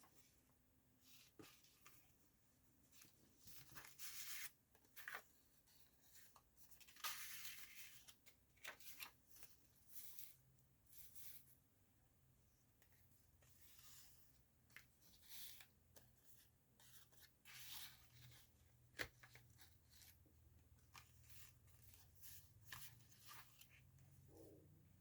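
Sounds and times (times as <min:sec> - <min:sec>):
paper pages rustling and scraping: 0:02.9 - 0:11.5, 0:13.4 - 0:24.5.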